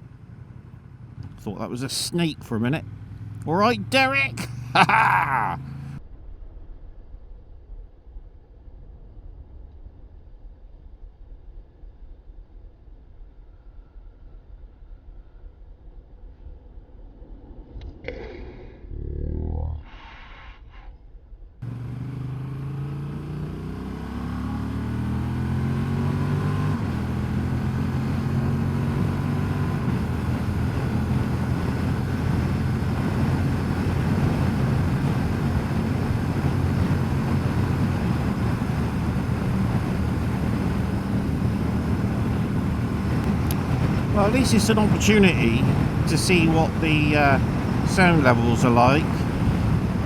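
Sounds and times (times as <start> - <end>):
motorcycle engine accelerating: 21.6 - 44.2
wind noise: 30.0 - 47.9, 49.0 - 50.0.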